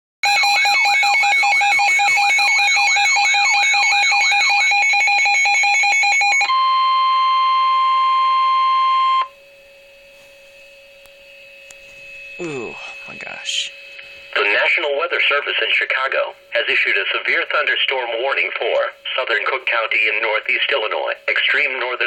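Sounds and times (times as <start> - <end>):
electronic warbling siren: 0.2 - 16.2
steady warning tone: 0.2 - 22.0
faint hum: 7.0 - 22.0.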